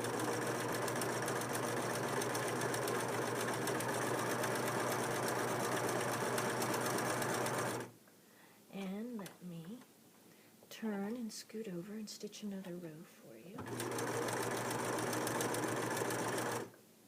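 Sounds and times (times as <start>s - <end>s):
electric sewing machine running: 0.0s - 7.9s, 13.6s - 16.7s.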